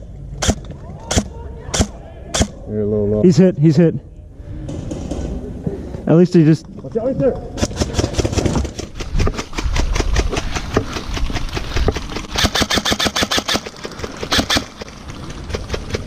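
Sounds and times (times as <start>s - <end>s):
airsoft guns firing bursts: 7.6s - 14.9s.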